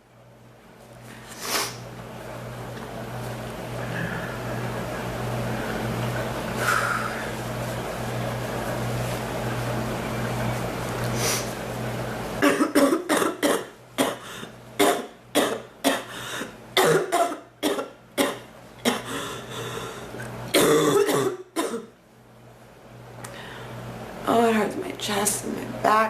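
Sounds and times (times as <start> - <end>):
woman coughing: 12.4 - 16.1, 16.8 - 19.1, 20.5 - 21.9.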